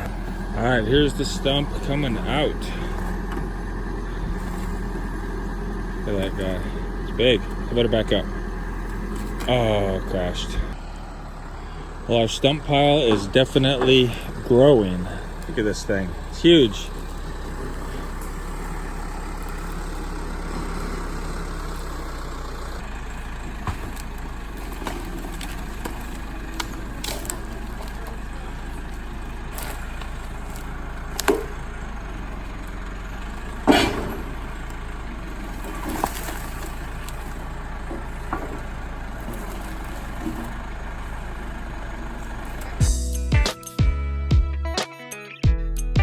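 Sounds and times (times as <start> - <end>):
backhoe engine running: 0.0 - 44.8
sharp knocks and clunks: 13.0 - 14.5, 23.6 - 24.0, 31.2 - 31.6, 33.6 - 34.5, 37.8 - 39.2.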